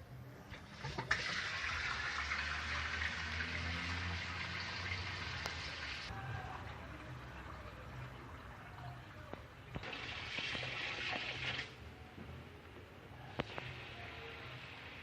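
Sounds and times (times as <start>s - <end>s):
water gushing in washing machine: 0.5s - 6.1s, 9.7s - 11.7s.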